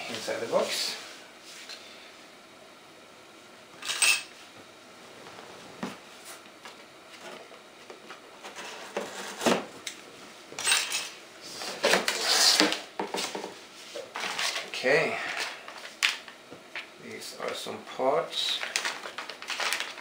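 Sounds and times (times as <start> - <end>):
packaging rustling and clattering: 18.5 - 20.0.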